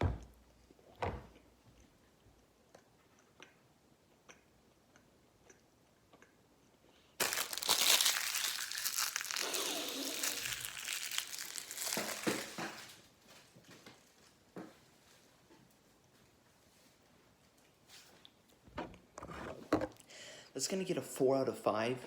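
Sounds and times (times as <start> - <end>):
loud crumpling and crinkling: 7.2 - 13.1.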